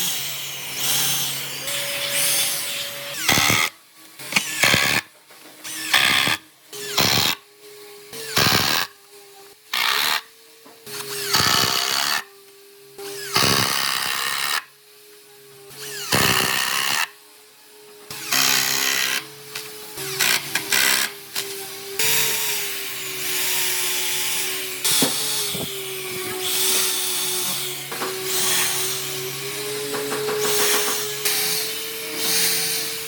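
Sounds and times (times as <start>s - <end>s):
power tool working wood: 0.0s - 33.0s.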